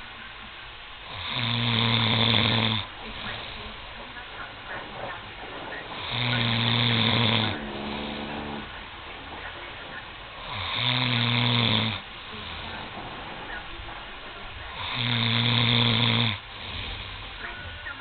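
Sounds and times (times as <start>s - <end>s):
man snoring: 1.0s - 3.6s, 5.9s - 8.8s, 10.4s - 13.0s, 14.7s - 17.4s.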